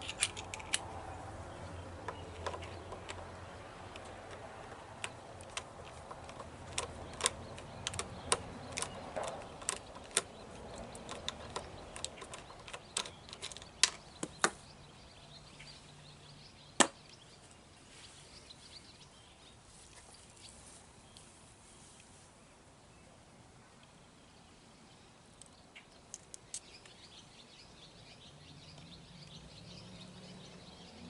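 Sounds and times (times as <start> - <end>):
clicks and taps of hand tools: 2.0 - 3.3, 3.9 - 14.6.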